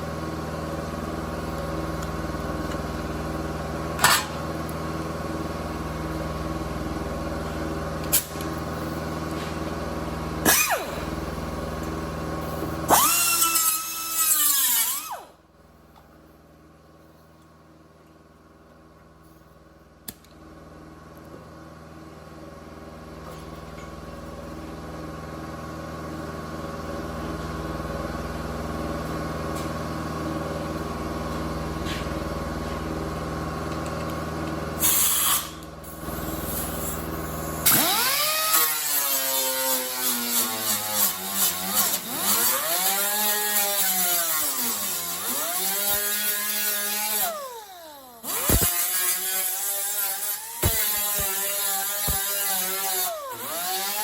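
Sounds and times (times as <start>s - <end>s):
steady machine hum: 0.0s - 13.1s
power tool cutting sheet metal: 10.4s - 11.2s, 12.8s - 15.4s, 34.8s - 54.0s.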